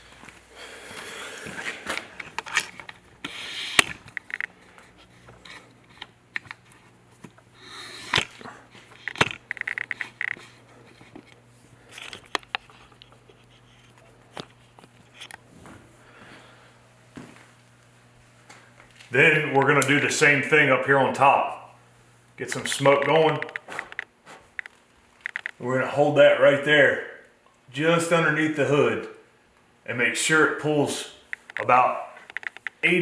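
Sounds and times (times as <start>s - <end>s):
sharp clicks and knocks: 1.9s - 7.4s, 8.0s - 11.4s, 22.5s - 25.6s, 31.3s - 32.8s
rapid ticks: 23.0s - 25.6s, 31.3s - 32.8s.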